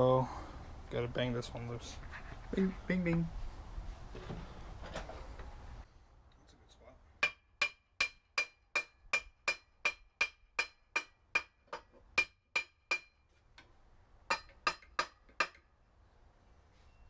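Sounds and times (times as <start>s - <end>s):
hammer striking metal: 7.2s - 13.2s, 14.3s - 15.7s.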